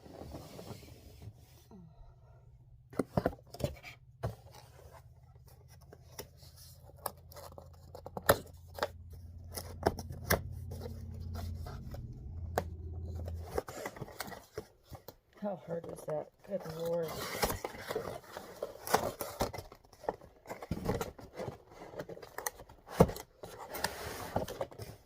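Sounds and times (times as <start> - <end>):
low steady hum: 0.1 - 18.2.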